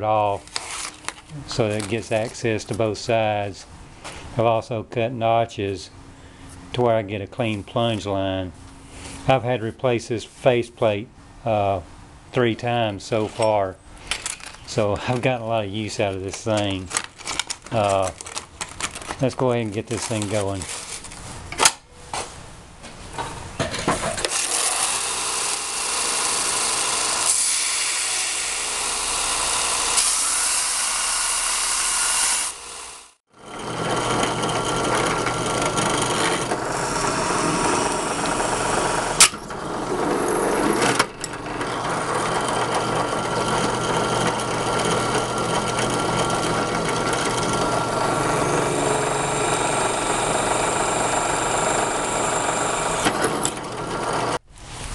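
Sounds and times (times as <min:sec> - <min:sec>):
belt sander motor hum: 0:24.3 - 0:54.4
blade grinding on belt sander: 0:24.3 - 0:54.4.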